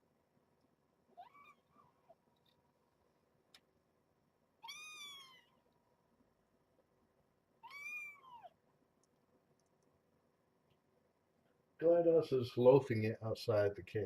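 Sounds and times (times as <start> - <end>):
cat meowing: 1.1 - 2.0, 4.6 - 5.6, 7.6 - 8.6.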